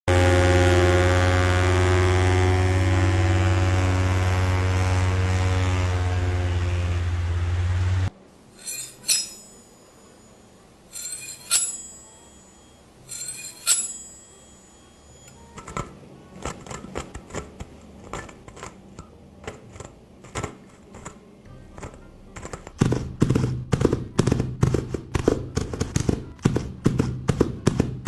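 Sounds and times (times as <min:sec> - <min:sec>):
metallic clinks with ringing: 0:08.6 - 0:15.4.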